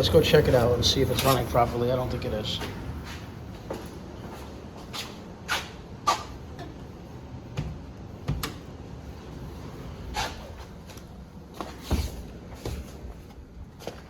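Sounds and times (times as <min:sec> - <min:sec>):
short irregular knocks and clunks: 0:07.5 - 0:08.7.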